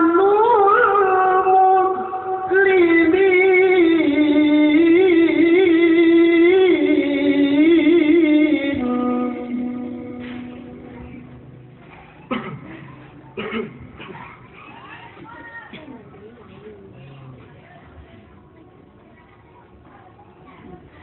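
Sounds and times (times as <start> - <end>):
man chanting melodically: 0.0 - 11.6.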